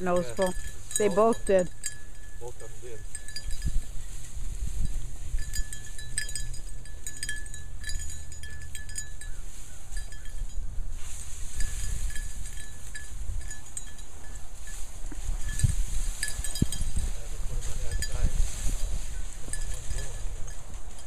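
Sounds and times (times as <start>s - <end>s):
dog collar bell jingling: 0.0s - 10.8s, 11.5s - 21.0s.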